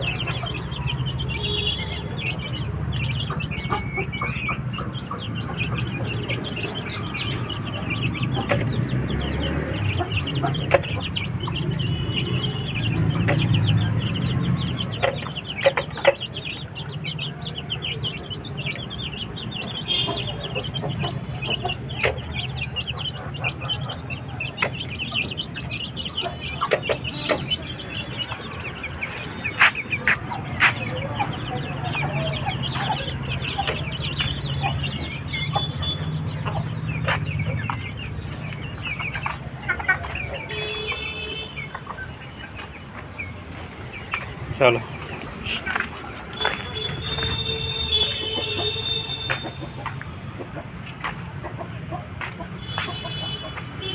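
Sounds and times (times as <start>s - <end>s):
chickens clucking: 0.0s - 53.9s.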